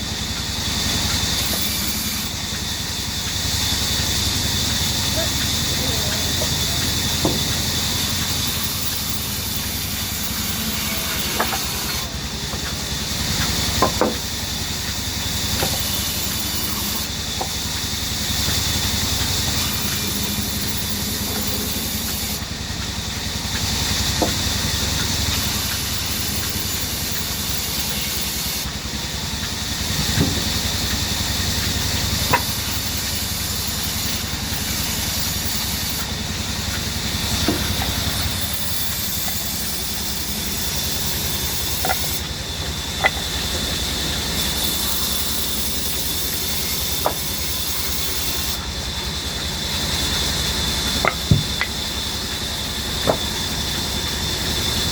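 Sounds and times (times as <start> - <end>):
band saw running: 0.0 - 54.9
sharp knocks: 51.0 - 51.8, 53.0 - 53.3.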